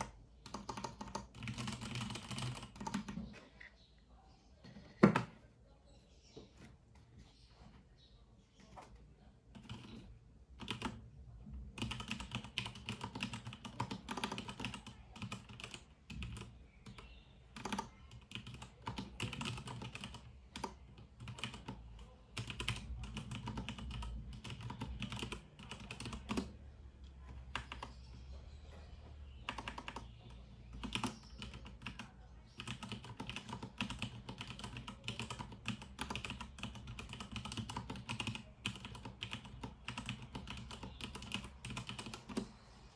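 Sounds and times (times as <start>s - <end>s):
mechanical keyboard typing: 0.0s - 3.3s, 9.6s - 10.0s, 10.6s - 11.0s, 11.7s - 26.6s, 27.2s - 28.0s, 29.4s - 42.5s.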